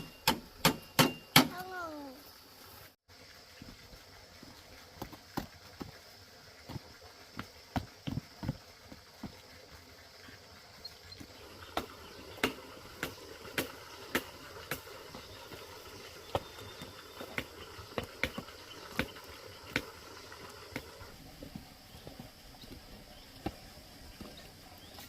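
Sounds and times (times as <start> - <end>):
sharp knocks: 0.0 - 1.6.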